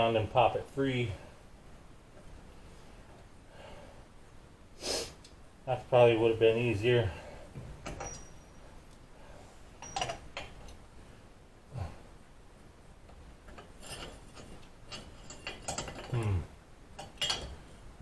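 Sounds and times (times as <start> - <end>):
metal tools clinking: 7.8 - 8.6, 9.8 - 10.5, 13.5 - 16.3, 17.0 - 17.8
light clatter: 13.1 - 16.4, 17.0 - 17.8.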